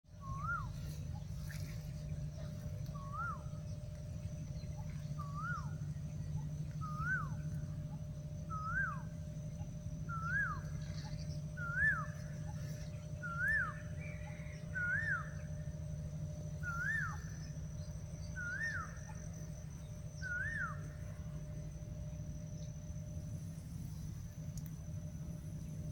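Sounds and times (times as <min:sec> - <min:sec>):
steady low hum: 0:00.0 - 0:25.9
bird whistled call: 0:00.2 - 0:01.8, 0:02.4 - 0:03.7, 0:04.6 - 0:07.7, 0:08.5 - 0:09.2, 0:10.0 - 0:15.5, 0:16.6 - 0:19.3, 0:20.1 - 0:21.1.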